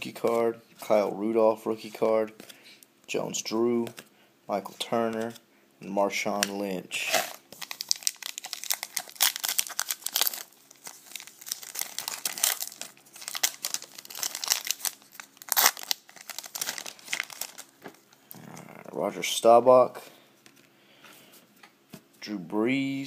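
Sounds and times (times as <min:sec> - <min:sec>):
wrapper tearing and crinkling: 0:07.0 - 0:17.8.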